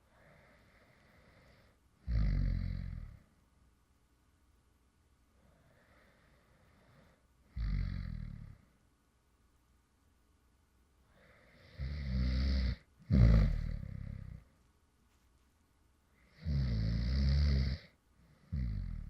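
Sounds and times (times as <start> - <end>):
man snoring: 2.0 - 3.2, 7.5 - 8.6, 11.5 - 14.4, 16.3 - 19.0.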